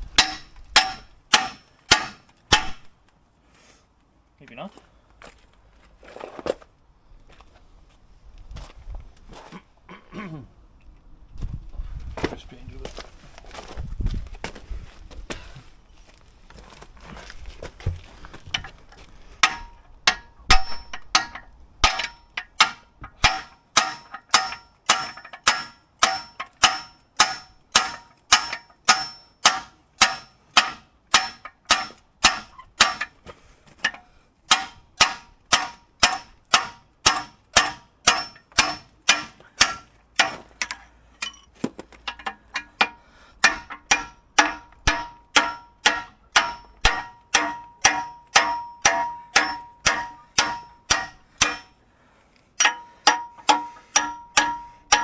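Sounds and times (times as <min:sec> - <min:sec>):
hammer striking steel pin: 0:00.2 - 0:02.9, 0:19.4 - 0:33.2, 0:33.8 - 0:41.5, 0:42.1 - 0:51.8, 0:52.6 - 0:55.0.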